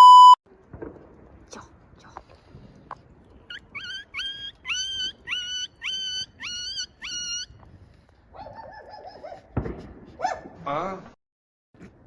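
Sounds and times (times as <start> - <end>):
squeaky animal calls: 3.5 - 7.5.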